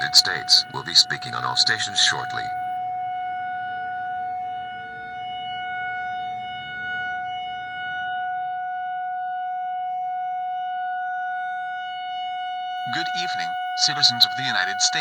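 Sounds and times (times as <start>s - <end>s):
buzzy electronic tone: 12.9s - 15.0s.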